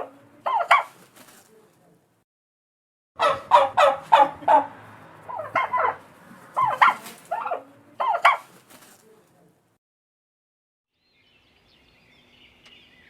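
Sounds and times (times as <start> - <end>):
dog barking: 3.2 - 8.5.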